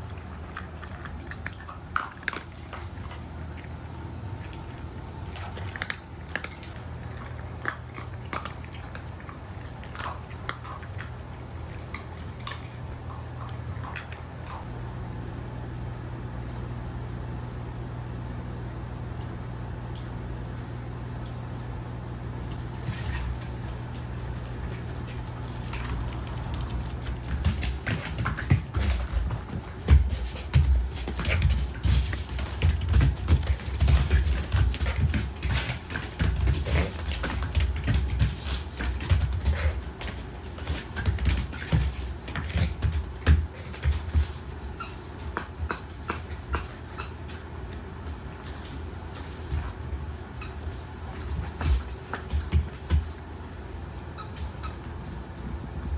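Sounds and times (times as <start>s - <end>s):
fan hum with hiss: 0.0s - 55.9s
puppy paws and toys tapping floor: 4.4s - 14.7s, 22.4s - 55.9s.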